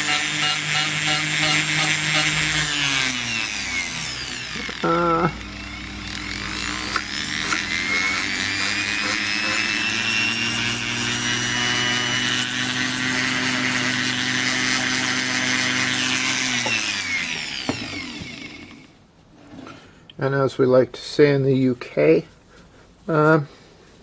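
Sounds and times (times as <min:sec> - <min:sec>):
rotary tool whine: 0:00.0 - 0:19.0.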